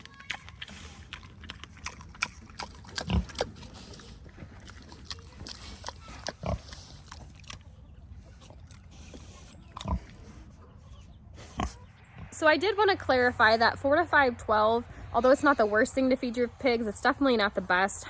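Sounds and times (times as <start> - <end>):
pigs grunting: 0.0 - 10.6, 11.4 - 11.9.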